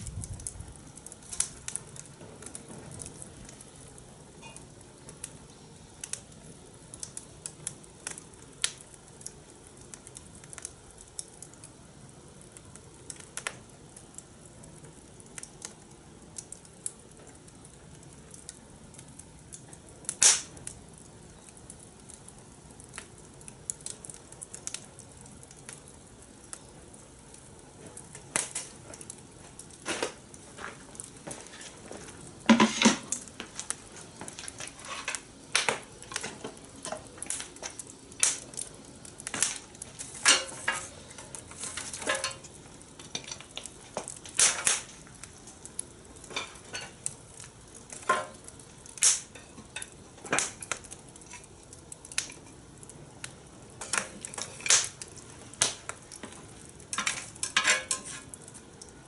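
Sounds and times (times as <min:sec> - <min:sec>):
low steady sizzle: 0:00.0 - 0:59.0
metal clinking on grill: 0:39.2 - 0:44.9, 0:46.2 - 0:47.1, 0:47.9 - 0:52.6, 0:53.8 - 0:55.0, 0:56.9 - 0:58.4.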